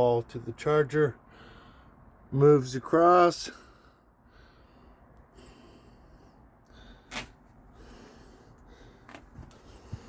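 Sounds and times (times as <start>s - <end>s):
person breathing sharply through nose: 1.2s - 2.1s, 3.6s - 10.0s.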